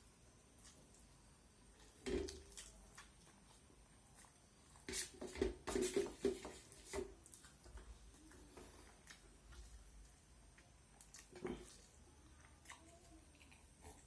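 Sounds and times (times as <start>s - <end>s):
close chewing sounds: 1.8s - 4.9s, 7.2s - 14.0s.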